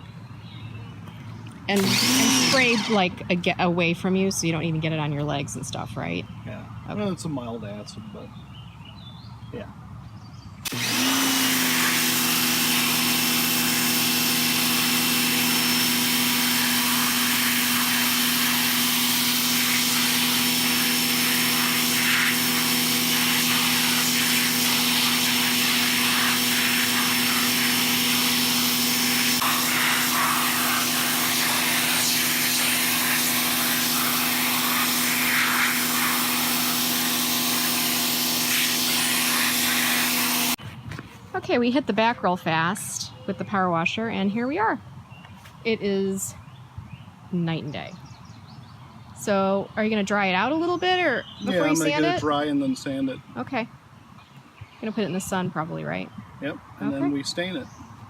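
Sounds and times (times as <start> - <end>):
pressure washer motor hum: 1.6 - 3.2, 10.6 - 40.6, 51.5 - 52.5
water spray hissing: 1.7 - 3.1, 10.7 - 40.6.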